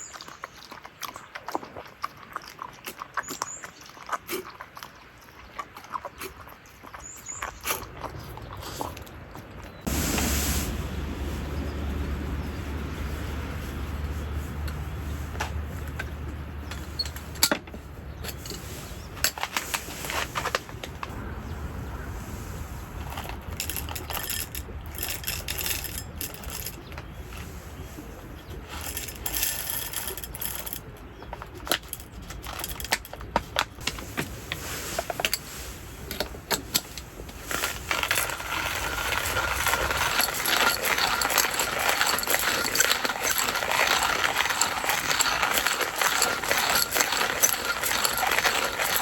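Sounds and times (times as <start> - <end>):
steady hiss: 9.9 - 11.3
small hard objects clinking: 23.0 - 27.0, 28.7 - 34.0, 36.1 - 49.0.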